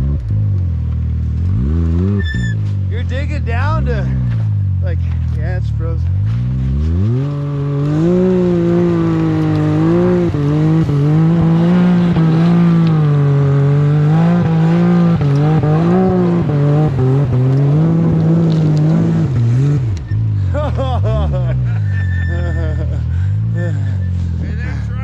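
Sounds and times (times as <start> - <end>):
utv engine revving: 0.0 - 25.0.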